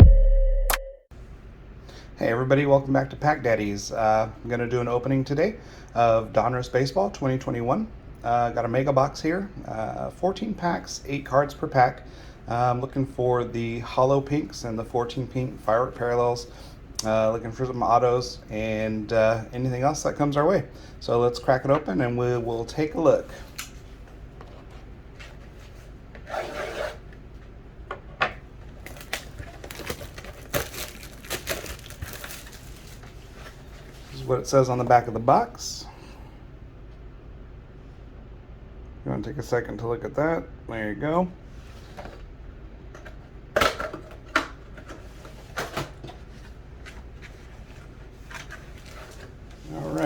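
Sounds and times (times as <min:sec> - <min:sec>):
cardboard rubbing and scraping: 0:26.2 - 0:27.0.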